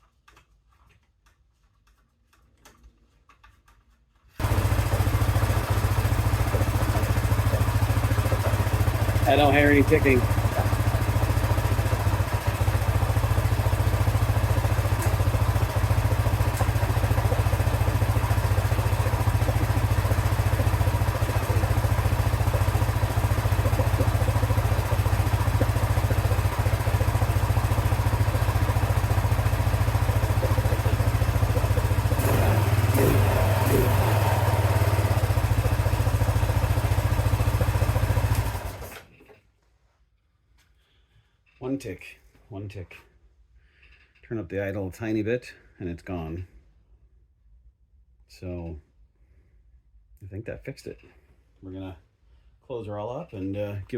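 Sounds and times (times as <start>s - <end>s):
atv engine idling: 4.4s - 39.0s.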